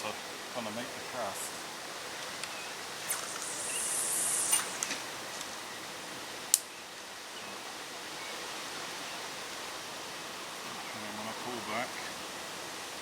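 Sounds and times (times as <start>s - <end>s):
steady outdoor hiss: 0.0s - 13.0s
fishing line hissing off reel: 3.0s - 5.1s.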